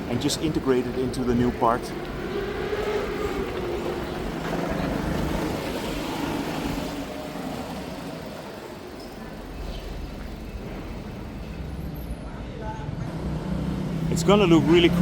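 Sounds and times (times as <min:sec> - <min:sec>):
motor vehicle passing: 0:00.0 - 0:12.1, 0:12.9 - 0:15.0.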